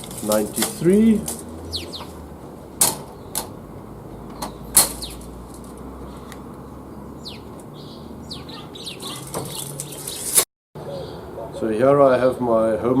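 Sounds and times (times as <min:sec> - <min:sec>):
falling bird chirps: 0:01.4 - 0:02.2, 0:04.2 - 0:11.6.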